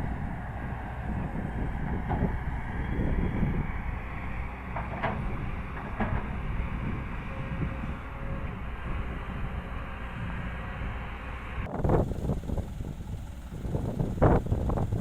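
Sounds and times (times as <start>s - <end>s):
diesel machinery rumbling: 0.0s - 15.0s.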